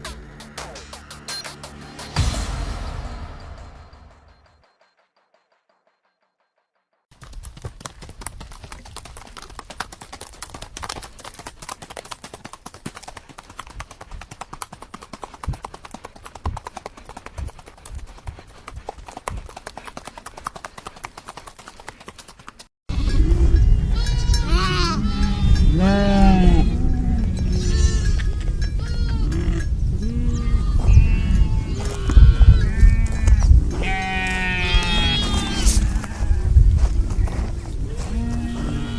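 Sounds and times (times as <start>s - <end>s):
horse hooves clip-clopping: 7.1s - 22.7s, 31.8s - 38.9s
livestock bleating: 23.9s - 36.4s, 37.9s - 38.9s.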